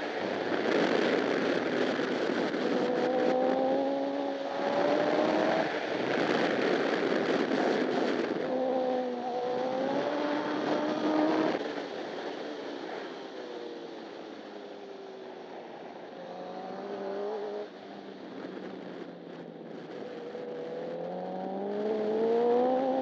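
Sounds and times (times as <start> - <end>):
motorcycle engine revving: 0.0 - 11.9, 20.0 - 23.0
wind rush: 0.0 - 13.4.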